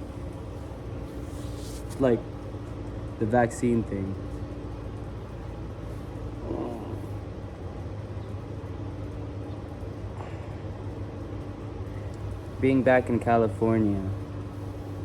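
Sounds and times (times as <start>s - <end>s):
low mechanical hum: 0.0s - 15.0s
faint voice-like sound: 6.4s - 7.2s.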